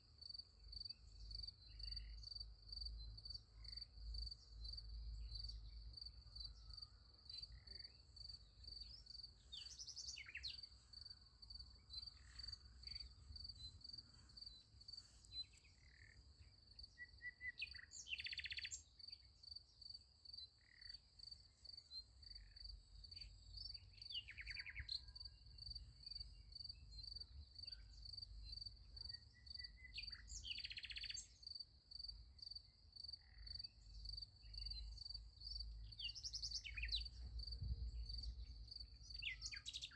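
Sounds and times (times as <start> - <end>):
crickets chirping: 0.2 - 24.2.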